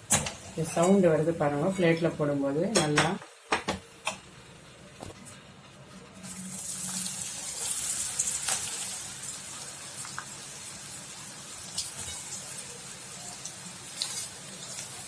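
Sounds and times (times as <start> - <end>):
peanuts sizzling in hot oil: 6.2 - 15.0.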